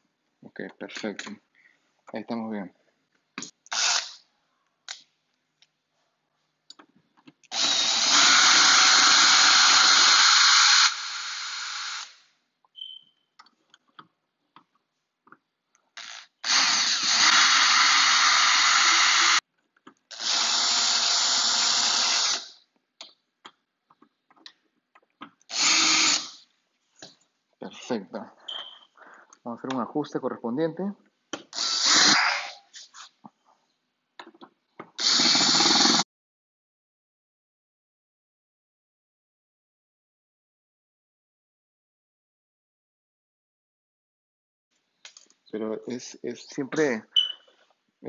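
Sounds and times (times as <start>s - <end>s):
power drill running: 3.7s - 4.2s, 7.5s - 12.2s, 16.4s - 19.4s, 20.1s - 22.5s, 25.5s - 26.4s, 31.6s - 32.5s, 35.0s - 36.0s
small clicks and knocks: 23.0s - 25.5s, 34.2s - 35.0s.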